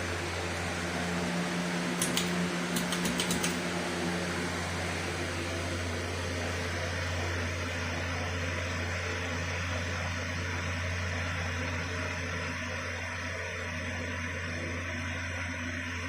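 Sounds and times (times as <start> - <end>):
ceiling fan motor hum: 0.0 - 16.0
light clicks: 2.0 - 3.6.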